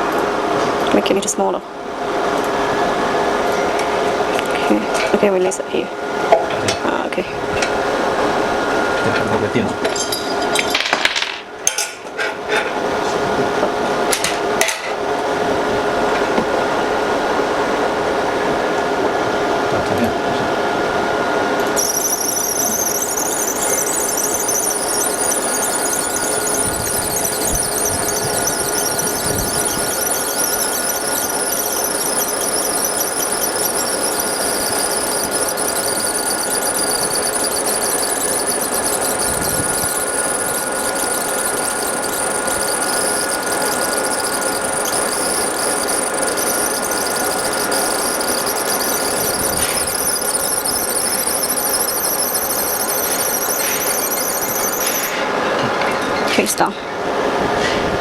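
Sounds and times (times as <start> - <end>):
laser engraver high-pitched whine: 15.4 - 55.5.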